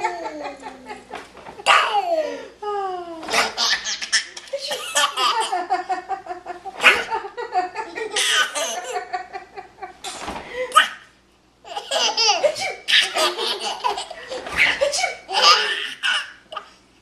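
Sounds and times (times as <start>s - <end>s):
hearty laughter: 0.0s - 1.2s, 5.2s - 10.0s.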